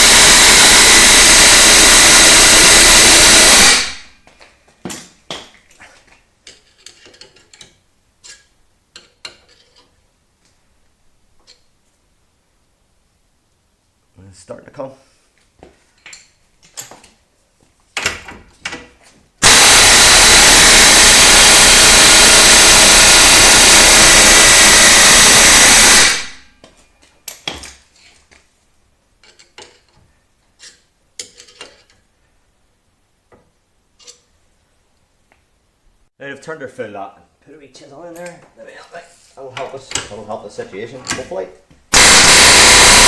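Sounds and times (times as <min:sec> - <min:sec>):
impact wrench hammering: 0:00.0 - 0:04.1, 0:19.4 - 0:26.4, 0:41.9 - 0:43.0.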